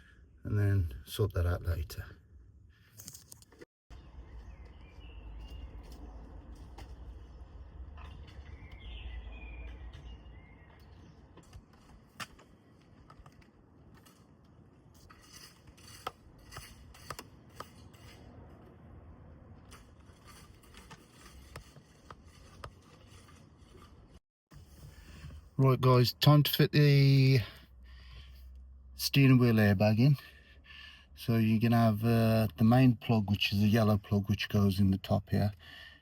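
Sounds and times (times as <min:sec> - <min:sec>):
bird chirp: 0:03.9 - 0:11.7.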